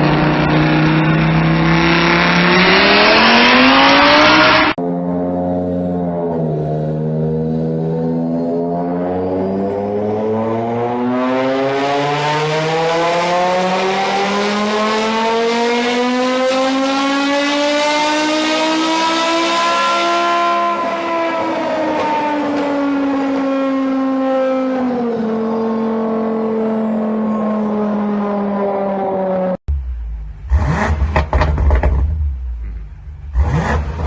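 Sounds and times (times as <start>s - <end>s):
car engine revving hard: 0.0s - 4.8s, 10.0s - 22.8s, 30.5s - 32.2s, 33.3s - 34.0s.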